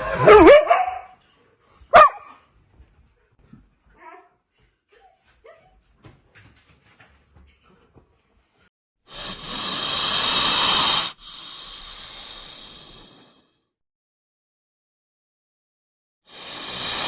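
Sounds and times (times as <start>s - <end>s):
loud steady hiss: 9.1s - 13.3s, 16.3s - 17.0s.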